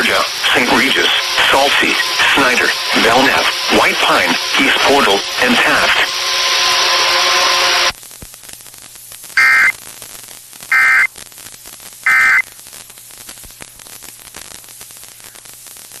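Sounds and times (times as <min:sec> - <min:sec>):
radio static hiss: 0:00.0 - 0:06.6, 0:07.6 - 0:16.0
warbling two-tone data bursts: 0:09.4 - 0:09.7, 0:10.7 - 0:11.1, 0:12.1 - 0:12.4
faint hum: 0:09.4 - 0:09.8, 0:10.6 - 0:11.2, 0:11.8 - 0:13.0.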